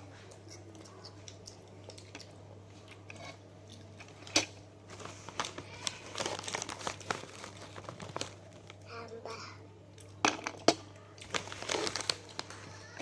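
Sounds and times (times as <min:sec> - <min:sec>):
plastic snack bag crinkling: 0:04.0 - 0:08.9, 0:10.4 - 0:13.0.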